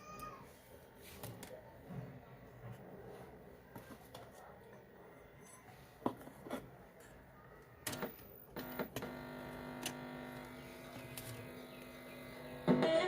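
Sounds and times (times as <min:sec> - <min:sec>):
speaker hum: 0:07.9 - 0:13.0.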